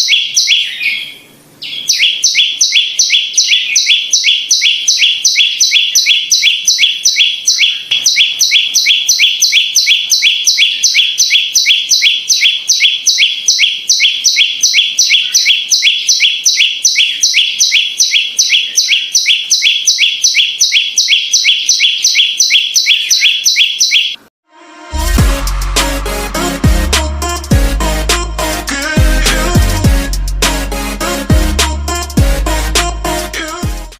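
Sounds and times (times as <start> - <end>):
bird chirping rapidly: 0.0 - 24.3.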